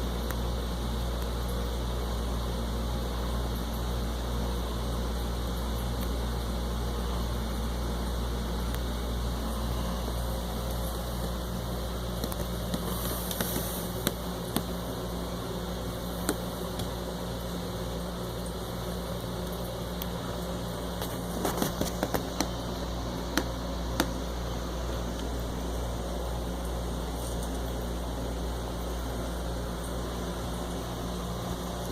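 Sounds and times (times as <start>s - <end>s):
steady mechanical hum: 0.0s - 31.9s
small clicks and taps: 12.2s - 14.8s, 16.2s - 17.0s, 21.0s - 22.6s, 23.3s - 24.2s.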